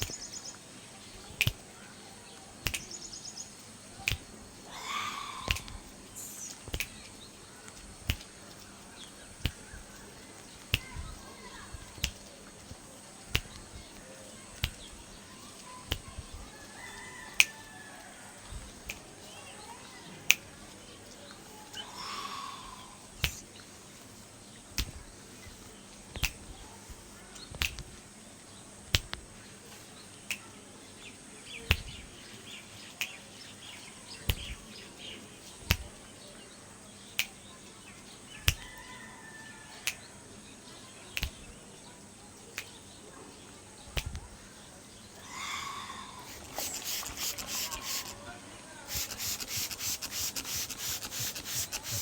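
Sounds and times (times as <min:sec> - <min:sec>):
finger snaps: 0:00.0 - 0:01.7, 0:02.4 - 0:03.2, 0:04.0 - 0:04.4, 0:05.4 - 0:11.2, 0:11.8 - 0:16.5, 0:18.7 - 0:19.1, 0:20.3 - 0:20.5, 0:23.1 - 0:23.7, 0:24.8 - 0:26.6, 0:27.4 - 0:28.0, 0:28.9 - 0:29.2, 0:30.2 - 0:30.5, 0:31.5 - 0:33.2, 0:34.1 - 0:34.6, 0:35.6 - 0:36.0, 0:37.1 - 0:37.5, 0:38.4 - 0:38.7, 0:39.8 - 0:40.1, 0:41.1 - 0:41.6, 0:42.5 - 0:42.8, 0:44.0 - 0:44.3, 0:46.2 - 0:48.2, 0:48.9 - 0:52.0.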